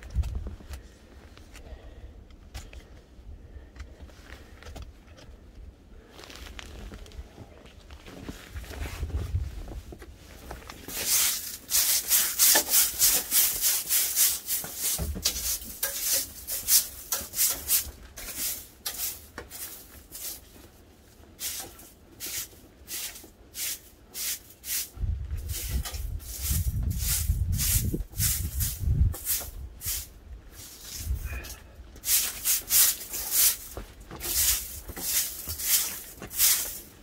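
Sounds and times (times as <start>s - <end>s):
rhythmic scraping strokes: 10.9s - 20.4s.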